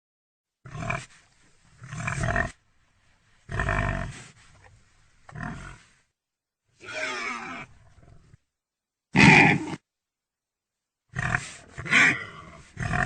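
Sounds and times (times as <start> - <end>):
pig grunting: 9.2 - 9.8, 11.2 - 13.0.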